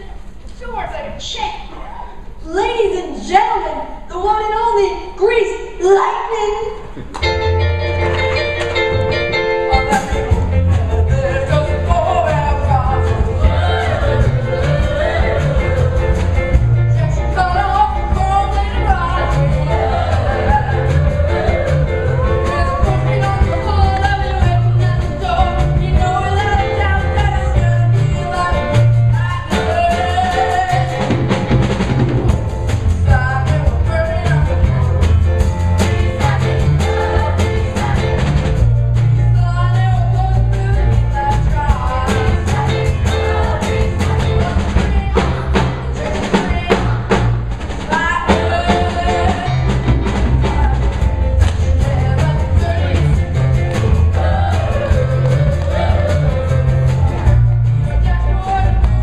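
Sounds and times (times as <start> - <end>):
steady drum beat: 7.7 - 59.0
young voices singing rock and roll: 9.6 - 31.4, 35.8 - 38.7, 39.4 - 59.0.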